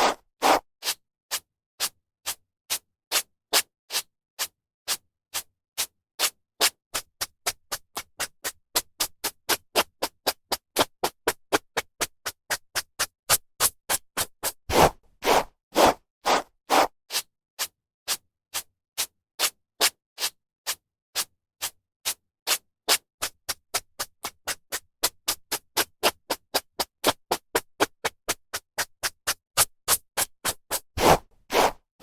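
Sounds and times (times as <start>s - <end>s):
hairbrush swishing through hair: 14.7s - 16.9s, 31.0s - 31.8s.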